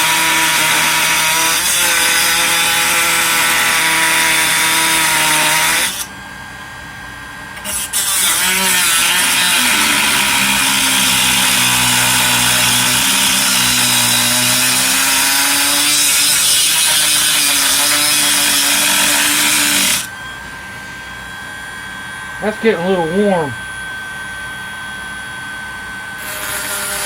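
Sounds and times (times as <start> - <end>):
power tool cutting metal: 0.0 - 6.1, 7.6 - 20.3, 26.1 - 27.0.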